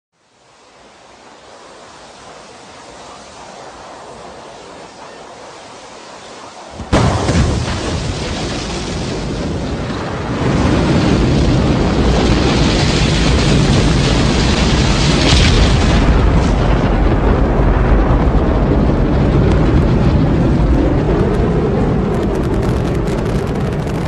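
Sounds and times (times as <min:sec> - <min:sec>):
rocket engine blast: 0:06.1 - 0:24.0.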